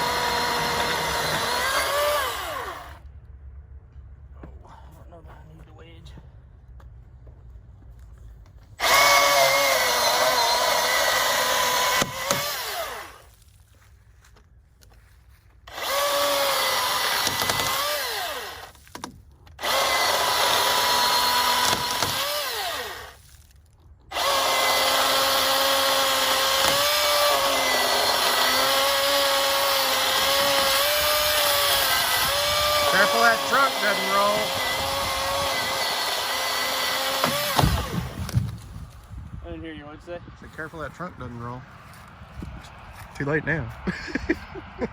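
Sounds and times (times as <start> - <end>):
battery chainsaw cutting log: 0.0 - 3.0, 8.8 - 13.4, 15.7 - 23.5, 24.1 - 38.8.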